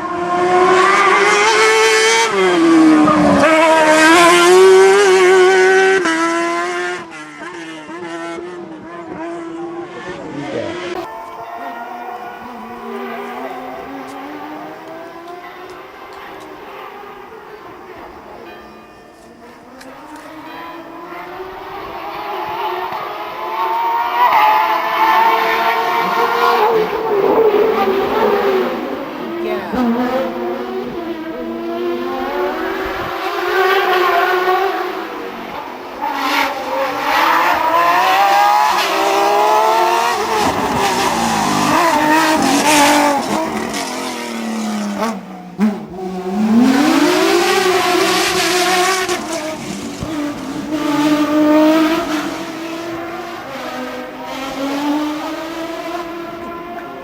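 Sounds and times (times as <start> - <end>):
race car engine revving: 0.0 - 18.4, 19.3 - 57.0.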